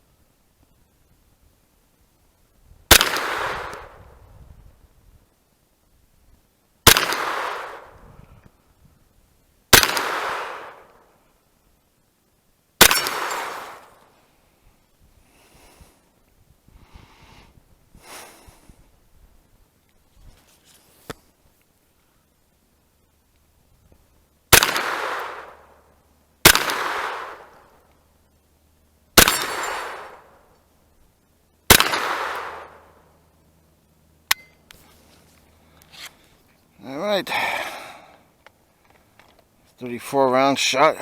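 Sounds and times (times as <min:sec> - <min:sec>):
gunshots with echo: 0:02.9 - 0:04.0, 0:06.9 - 0:07.9, 0:09.8 - 0:10.9, 0:12.8 - 0:13.9, 0:24.6 - 0:25.6, 0:26.5 - 0:27.5, 0:31.7 - 0:32.8
faint handling sounds: 0:19.8 - 0:22.2, 0:34.3 - 0:36.8.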